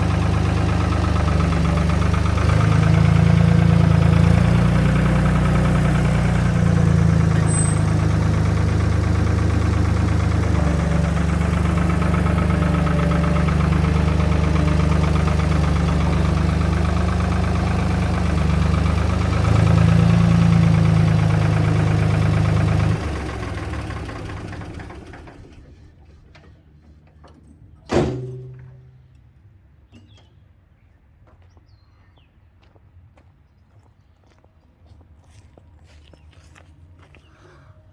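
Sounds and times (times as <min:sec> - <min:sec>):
diesel engine idling: 0:00.0 - 0:26.0.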